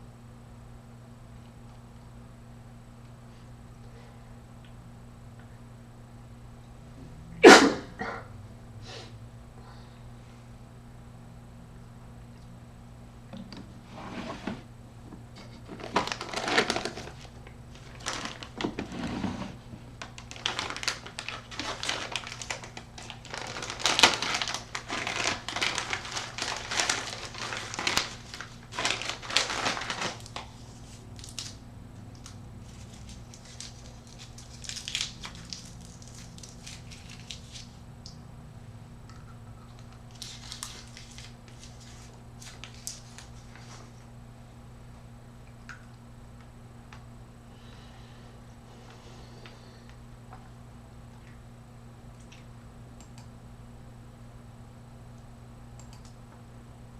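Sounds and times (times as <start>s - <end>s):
steady low hum: 0.0s - 56.9s
crinkling and clicking handling noises: 14.4s - 38.2s, 39.1s - 44.1s.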